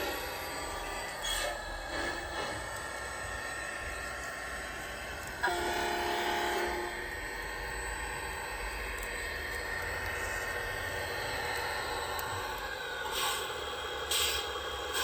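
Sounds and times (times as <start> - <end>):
horn blast: 5.5 - 6.9.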